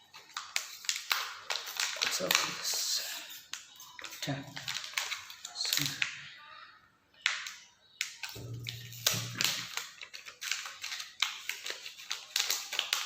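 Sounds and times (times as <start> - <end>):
packaging crinkling: 8.2 - 13.0.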